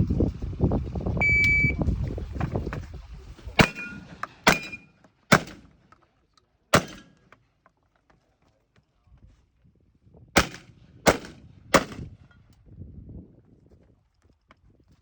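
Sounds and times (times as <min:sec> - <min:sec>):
shot timer beep: 0:01.2 - 0:01.8, 0:03.6 - 0:04.9
shotgun shots: 0:03.6 - 0:05.7, 0:06.7 - 0:07.2, 0:10.4 - 0:12.1.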